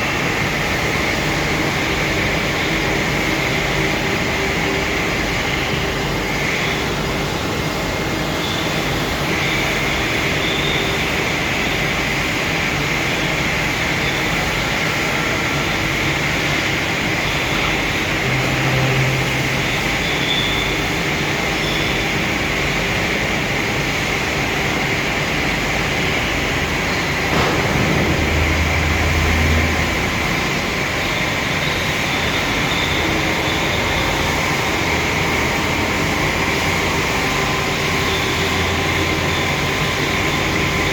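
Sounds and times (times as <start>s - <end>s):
machinery running loudly: 0.0s - 40.9s
faint high whine: 16.5s - 22.1s.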